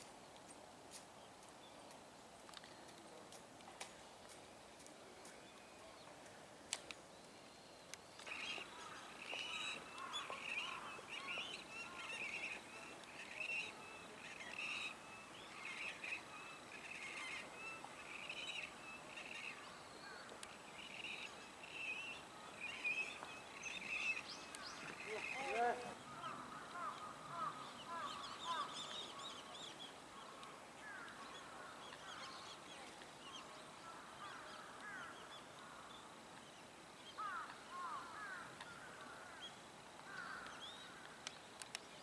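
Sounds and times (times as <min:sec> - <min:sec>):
birds calling: 0:08.2 - 0:35.9, 0:37.2 - 0:41.7.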